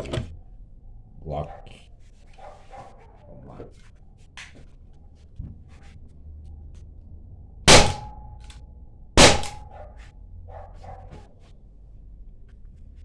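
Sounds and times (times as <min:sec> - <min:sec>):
air pistol shots: 0:07.7 - 0:08.2, 0:09.2 - 0:09.7.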